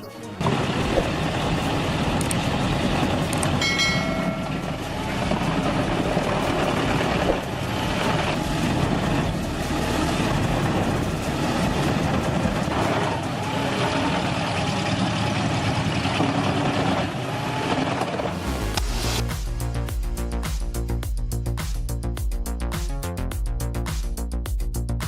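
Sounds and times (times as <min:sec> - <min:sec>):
wood chipper engine drone: 0:00.4 - 0:19.2.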